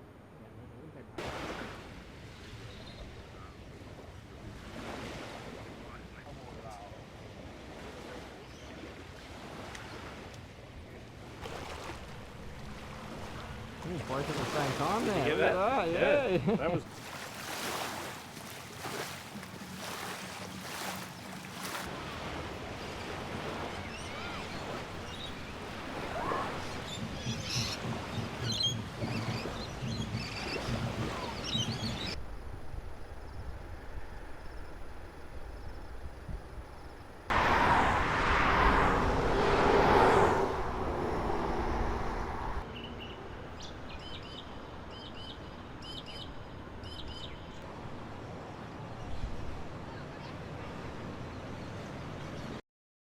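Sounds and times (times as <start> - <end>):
small birds chirping: 26.6 - 32.2
rush of noise: 37.3 - 42.6.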